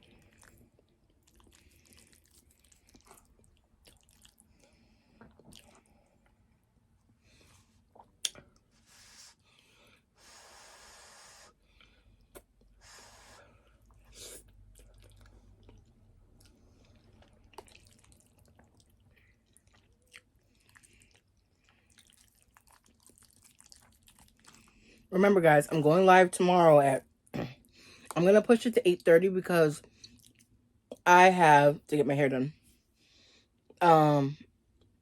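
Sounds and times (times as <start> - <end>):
person chewing: 0.0 - 6.1, 13.7 - 25.0, 29.8 - 30.5.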